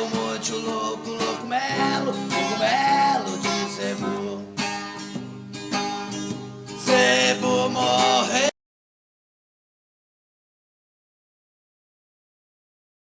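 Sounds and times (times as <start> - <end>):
person singing: 0.0 - 5.2, 6.7 - 8.6
strummed acoustic guitar: 0.0 - 8.5.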